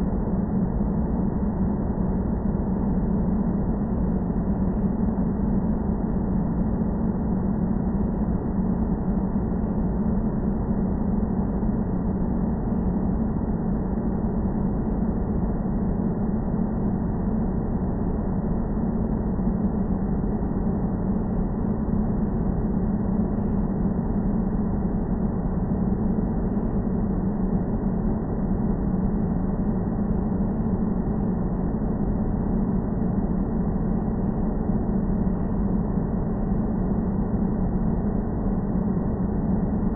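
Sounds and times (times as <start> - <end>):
airplane low drone: 0.0 - 39.9.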